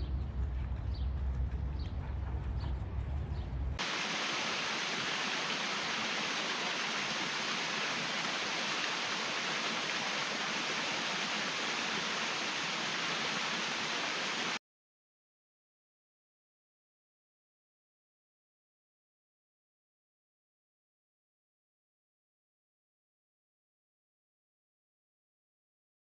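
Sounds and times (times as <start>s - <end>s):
low rumble: 0.0s - 3.8s
waterfall rushing: 3.8s - 14.6s.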